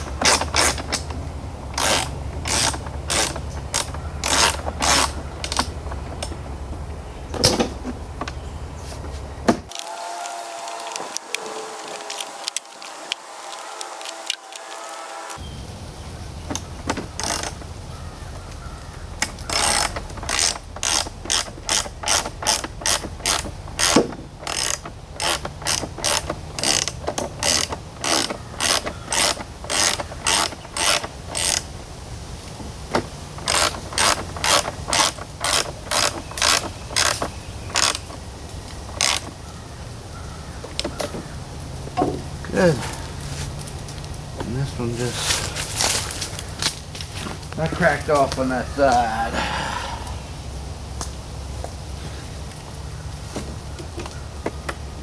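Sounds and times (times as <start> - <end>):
ratchet wrench clicking: 0.0 - 6.4, 16.6 - 17.6, 19.2 - 31.7, 33.4 - 39.3.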